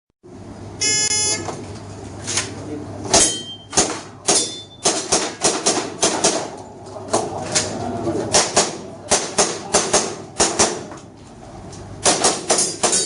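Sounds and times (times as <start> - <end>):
brief ringing tone: 0.8 - 1.4
shot timer beep: 0.8 - 1.4
airsoft pistol shots: 12.0 - 13.0.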